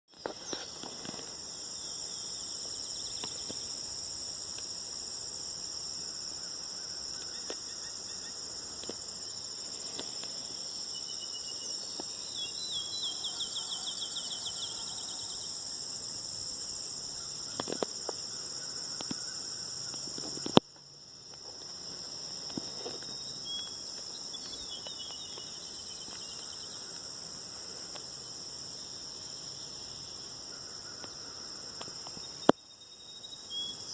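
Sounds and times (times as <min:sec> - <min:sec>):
night insect chorus: 0:00.1 - 0:33.9.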